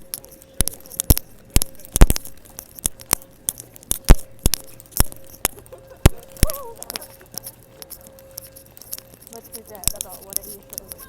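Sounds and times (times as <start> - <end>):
earbud microphone popping: 0.0 - 11.0
faint steady tone: 0.0 - 11.0.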